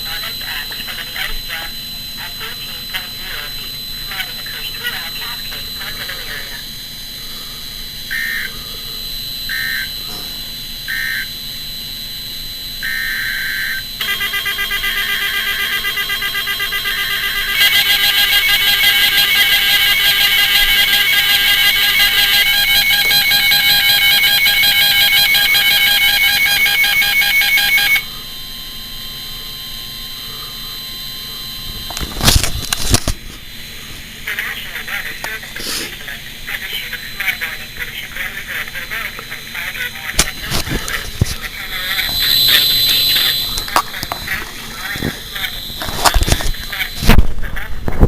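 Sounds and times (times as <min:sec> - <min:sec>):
harsh warbling alarm signal: 0:00.0 - 0:48.0
short electronic data beeps: 0:12.8 - 0:28.1, 0:41.8 - 0:47.2.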